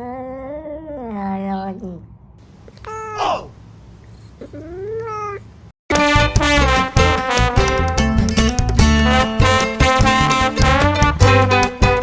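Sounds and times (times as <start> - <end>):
cat meowing: 4.4 - 5.6
brass band swing music: 5.9 - 12.0.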